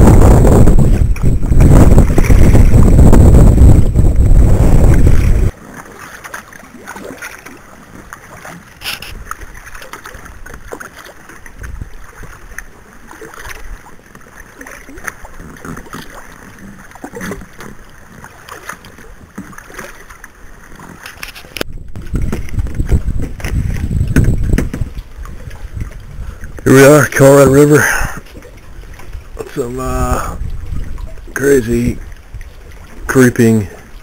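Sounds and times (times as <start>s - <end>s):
wind buffeting microphone: 0.0s - 5.5s, 11.5s - 12.6s, 21.6s - 34.0s
water lapping: 0.0s - 34.0s
small water splashes: 5.1s - 24.0s, 24.6s - 34.0s.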